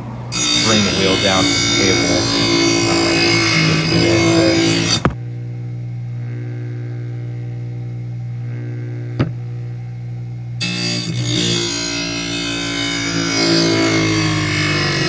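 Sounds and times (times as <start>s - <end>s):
blade grinding against wheel: 0.0s - 5.2s, 10.6s - 15.0s
motor humming: 0.0s - 15.0s.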